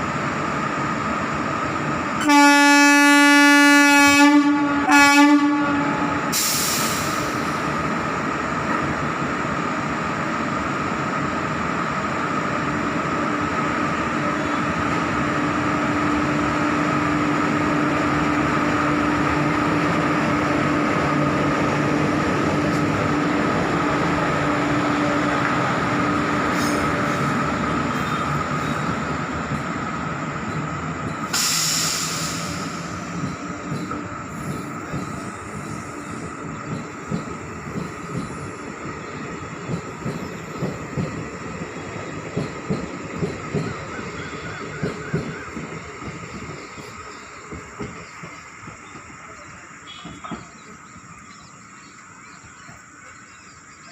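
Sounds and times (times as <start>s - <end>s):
train wheels rumbling on rails: 0.0s - 53.9s
hiss bursts: 6.2s - 8.2s, 26.4s - 27.6s, 31.2s - 38.6s.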